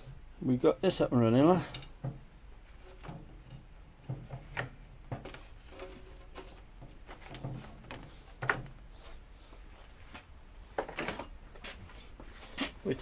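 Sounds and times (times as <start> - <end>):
objects knocking and clunking: 1.5 - 8.9.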